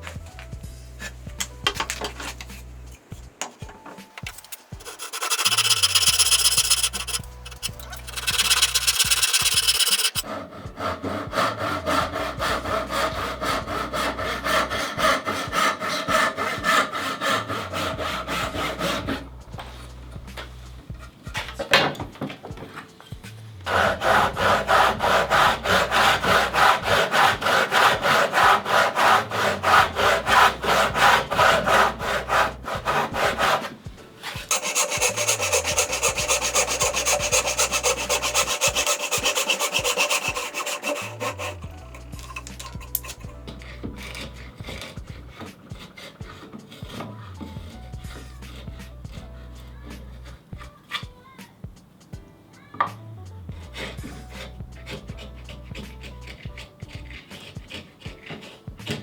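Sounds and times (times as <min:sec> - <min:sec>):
background music with bass: 0:00.0 - 0:03.4, 0:05.6 - 0:09.7, 0:10.7 - 0:16.7, 0:17.3 - 0:21.7, 0:23.1 - 0:28.1, 0:29.1 - 0:34.5, 0:41.1 - 0:50.8, 0:51.8 - 0:57.7
hand saw cutting wood: 0:04.3 - 0:21.7, 0:22.7 - 0:51.2, 0:53.4 - 0:59.0.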